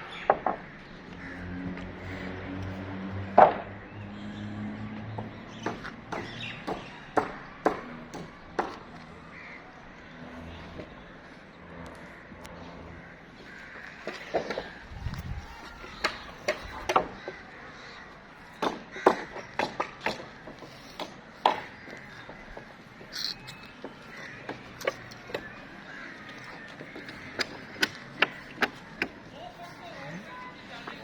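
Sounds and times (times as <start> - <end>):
masonry taps and knocks: 5.2 - 9.0, 18.6 - 22.7.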